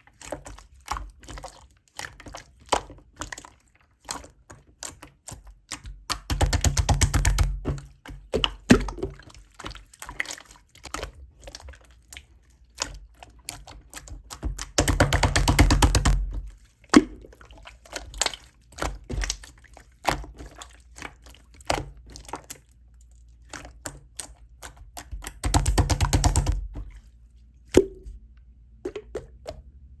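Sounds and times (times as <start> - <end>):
rapid stirring in cup: 0.0 - 27.4.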